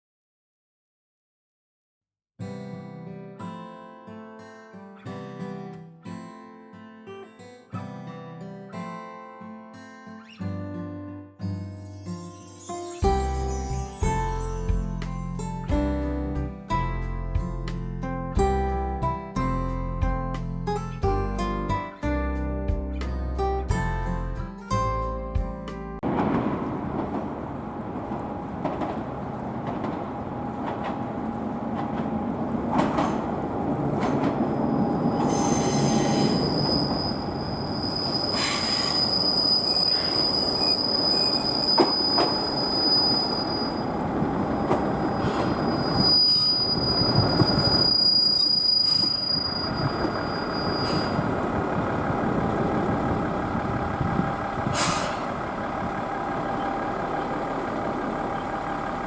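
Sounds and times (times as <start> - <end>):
diesel railcar rumbling: 12.2 - 19.8, 26.0 - 59.0
wheels clicking on rails: 26.0 - 59.0
high metallic squeal: 28.1 - 51.5.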